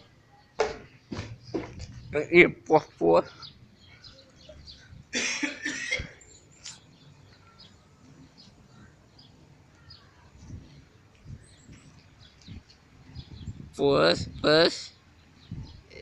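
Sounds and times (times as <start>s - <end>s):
person coughing: 5.2s - 6.2s.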